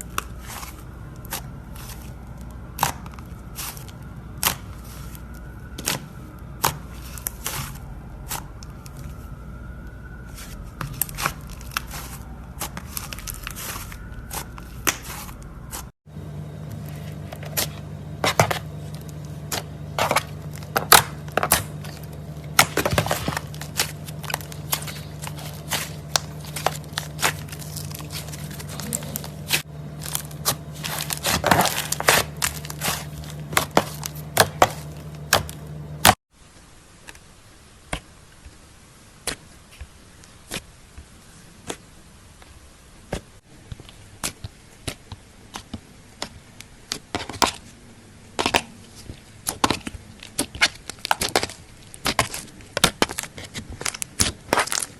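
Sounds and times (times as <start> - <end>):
slime crackling and popping: 0.0 - 15.9, 18.3 - 36.2, 48.4 - 54.9
steady low hum: 0.0 - 36.2.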